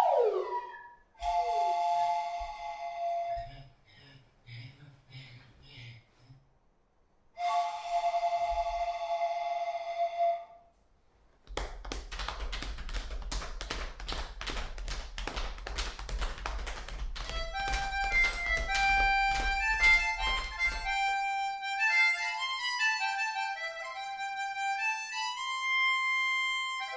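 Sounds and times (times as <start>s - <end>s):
harmonica-like melody: 0.0s - 3.6s, 7.4s - 10.6s, 17.3s - 26.9s.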